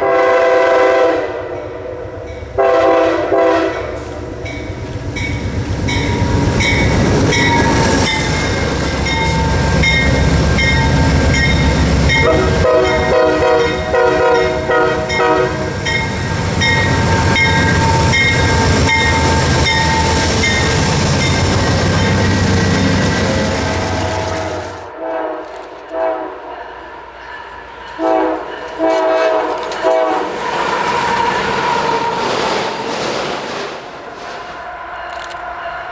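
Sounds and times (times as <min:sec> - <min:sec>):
train horn chord: 0:00.0 - 0:01.8, 0:02.6 - 0:04.2, 0:07.2 - 0:30.4
train rumbling and clicking: 0:00.0 - 0:35.9.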